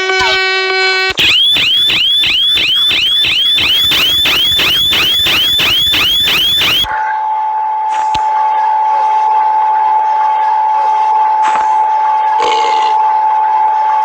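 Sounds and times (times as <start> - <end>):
rising electronic alarm chirps: 1.2 - 6.9
steady single alarm tone: 1.2 - 6.9.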